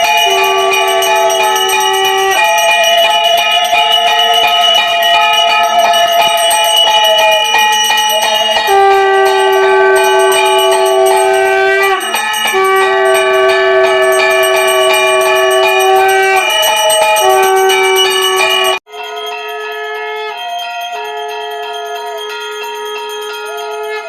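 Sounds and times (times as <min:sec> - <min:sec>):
conch shell blasts: 0:00.0 - 0:18.8
brass hand bell ringing rapidly: 0:00.0 - 0:24.0.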